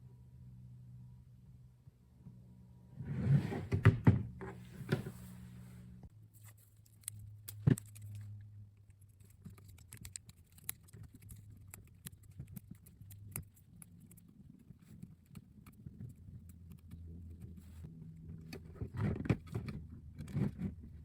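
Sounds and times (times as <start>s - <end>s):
faint low hum: 0.0s - 21.0s
small parts clicking: 6.4s - 17.0s.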